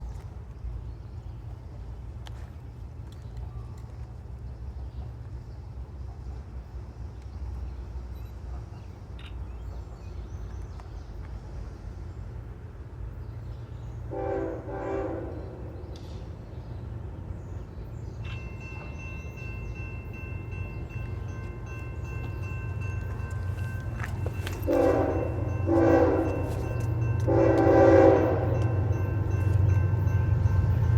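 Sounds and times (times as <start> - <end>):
diesel freight train rumble: 0.1 - 30.9
locomotive air horn blasts: 14.1 - 15.8, 24.5 - 29.2.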